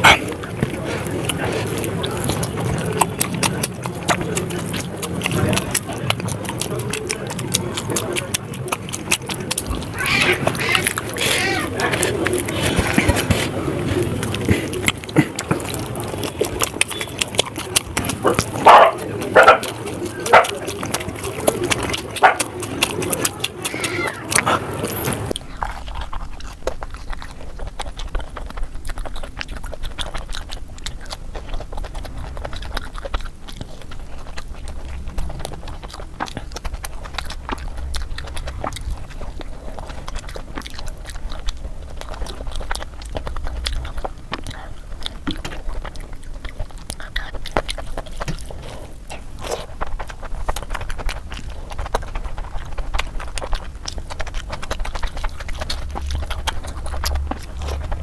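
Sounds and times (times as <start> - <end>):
chewing and wet mouth sounds: 0.0 - 58.0
steady low hum: 24.2 - 58.0.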